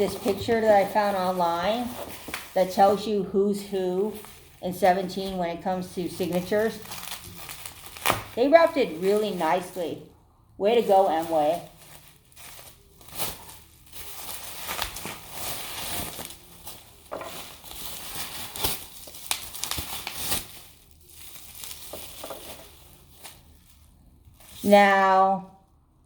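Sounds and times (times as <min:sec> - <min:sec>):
packaging crinkling: 0:00.0 - 0:10.0, 0:10.7 - 0:24.8.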